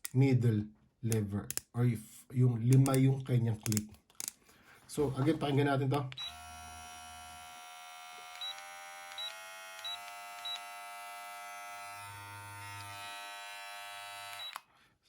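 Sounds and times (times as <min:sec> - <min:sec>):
clipper clicks: 0:02.7 - 0:04.4
hair clipper buzzing: 0:06.2 - 0:14.7.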